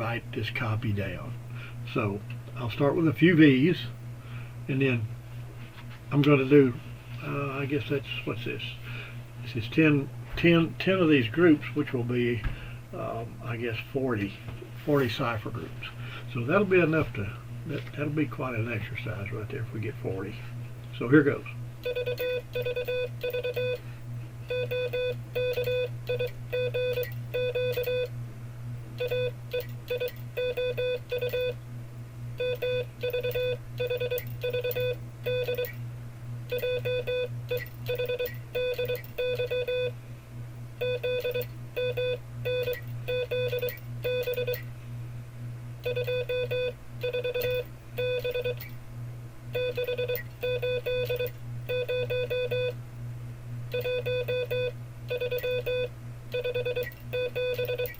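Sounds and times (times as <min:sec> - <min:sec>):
morse code beeping: 0:21.8 - 0:23.8, 0:24.5 - 0:28.1, 0:29.0 - 0:31.6, 0:32.4 - 0:35.8, 0:36.5 - 0:39.9, 0:40.8 - 0:44.6, 0:45.8 - 0:48.7, 0:49.6 - 0:52.8, 0:53.7 - 0:57.9.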